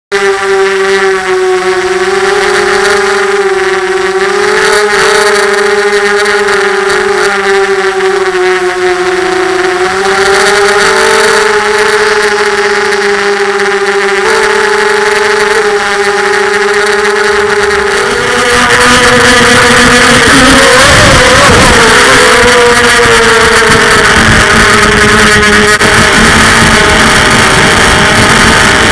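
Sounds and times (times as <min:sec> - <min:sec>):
quadcopter motors whining: 0:00.2 - 0:28.9.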